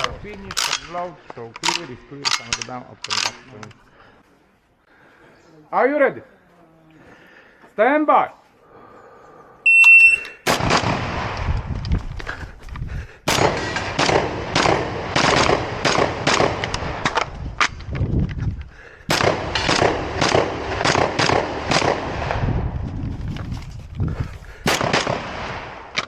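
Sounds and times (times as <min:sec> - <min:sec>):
shot timer start beep: 0:09.7 - 0:10.4
shotgun shots: 0:10.4 - 0:11.4, 0:13.3 - 0:17.3, 0:19.1 - 0:22.5, 0:24.6 - 0:26.0.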